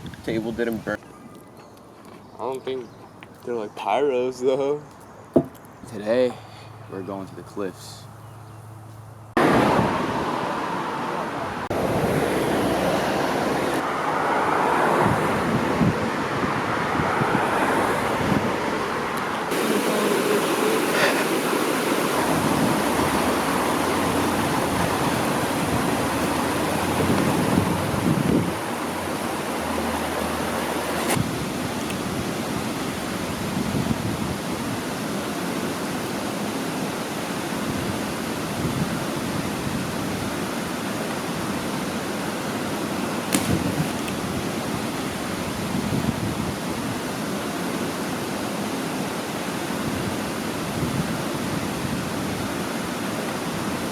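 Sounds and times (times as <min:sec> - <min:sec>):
waterfall rushing: 0:09.4 - 0:33.6.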